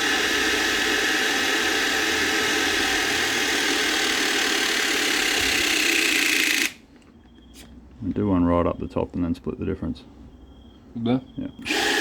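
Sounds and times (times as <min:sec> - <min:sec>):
hydraulic crimping tool running: 0:00.0 - 0:06.8, 0:11.6 - 0:12.0.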